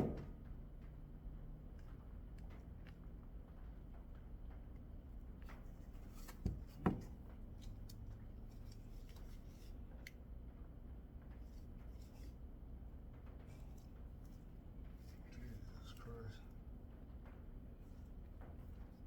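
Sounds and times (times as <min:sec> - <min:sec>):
sharp knocks: 0:00.0 - 0:00.4.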